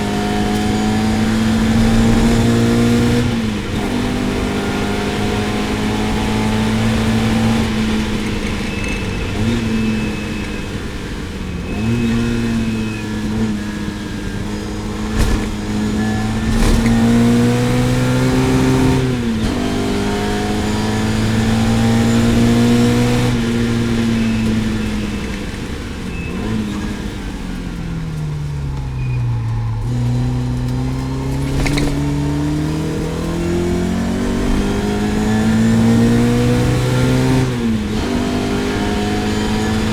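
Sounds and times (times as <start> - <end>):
race car engine revving: 0.0 - 39.9.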